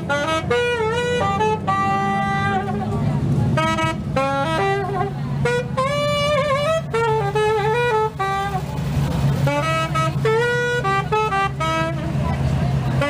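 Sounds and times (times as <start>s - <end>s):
saxophone playing blues melody: 0.0s - 13.0s.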